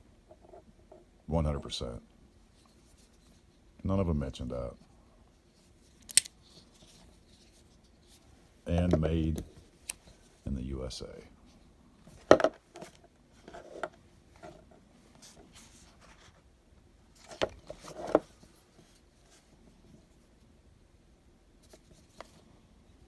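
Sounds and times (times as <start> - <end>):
folding knife clicks and snaps: 6.0 - 6.3.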